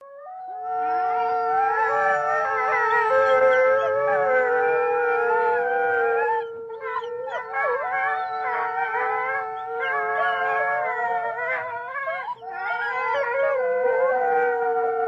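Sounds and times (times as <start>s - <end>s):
wolves howling: 0.0s - 15.0s
wolves yipping: 6.7s - 13.6s.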